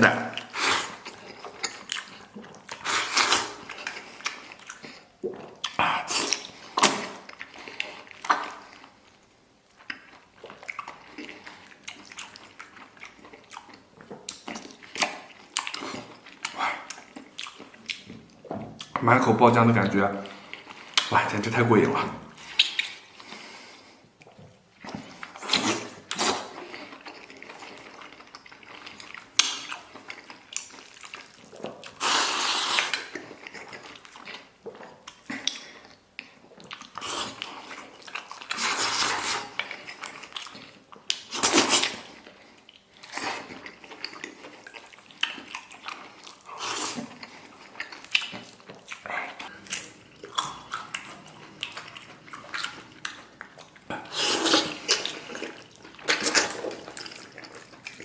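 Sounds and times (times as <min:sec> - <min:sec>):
wet chewing and smacking: 0:00.0 - 0:21.2, 0:22.2 - 0:58.0
loud slurps: 0:00.3 - 0:01.0, 0:32.0 - 0:33.1, 0:38.5 - 0:39.6, 0:54.0 - 0:57.2.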